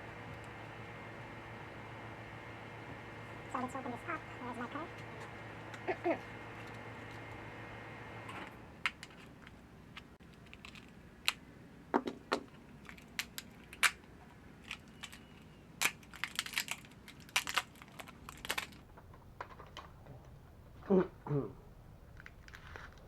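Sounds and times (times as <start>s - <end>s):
plastic packaging being cut: 14.8s - 18.8s.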